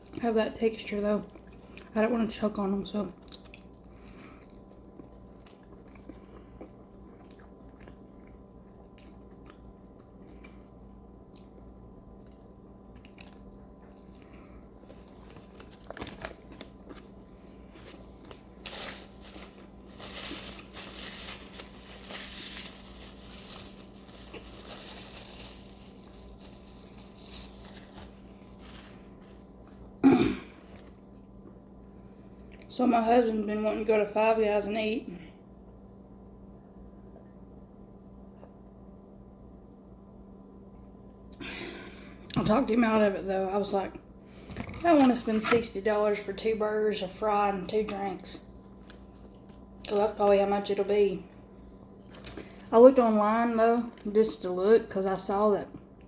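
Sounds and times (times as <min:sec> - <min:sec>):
person chewing a burger: 0:03.2 - 0:19.9, 0:48.6 - 0:49.9.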